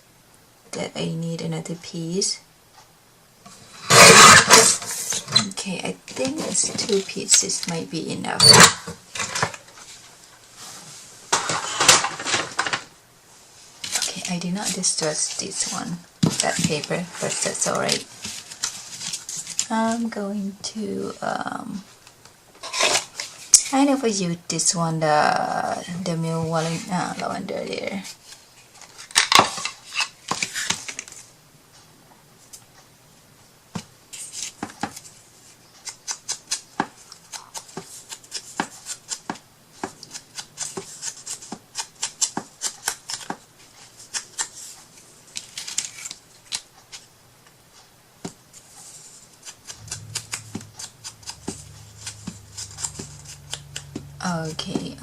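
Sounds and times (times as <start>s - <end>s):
scissors snipping paper: 35.8s - 44.6s, 49.4s - 54.0s
low steady hum: 48.6s - 55.0s.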